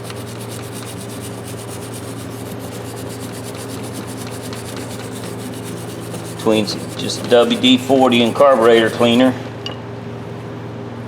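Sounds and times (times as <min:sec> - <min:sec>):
drill hum: 0:00.0 - 0:09.3
wire brush scrubbing metal: 0:00.0 - 0:09.4.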